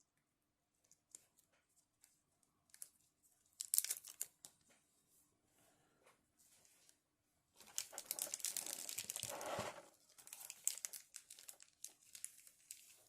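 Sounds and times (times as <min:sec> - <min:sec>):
small clicks of packaging: 0:00.8 - 0:04.7, 0:07.6 - 0:09.4, 0:10.1 - 0:13.0
packaging crinkling: 0:03.6 - 0:04.4, 0:07.6 - 0:13.0.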